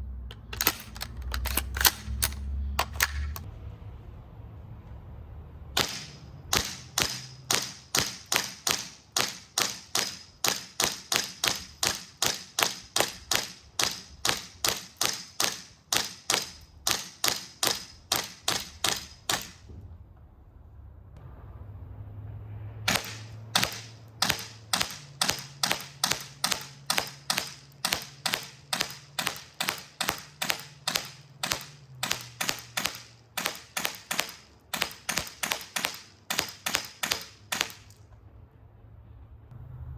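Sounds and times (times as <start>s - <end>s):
airsoft rifle shots: 5.8s - 19.7s, 22.9s - 38.0s.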